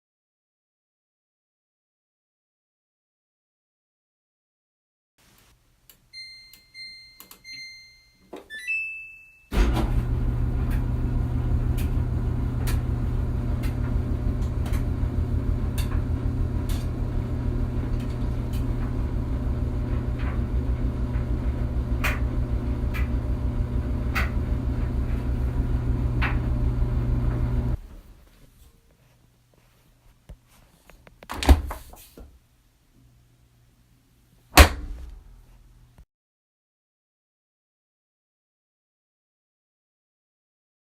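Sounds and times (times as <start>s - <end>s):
dryer control panel beeps: 6.1s - 9.6s
dryer drum humming: 9.5s - 28.4s.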